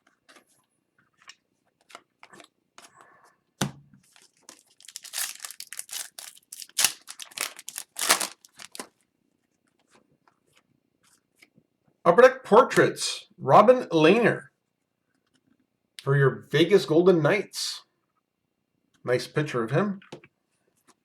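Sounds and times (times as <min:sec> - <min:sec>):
foil wrapper crinkling: 0:04.1 - 0:08.9.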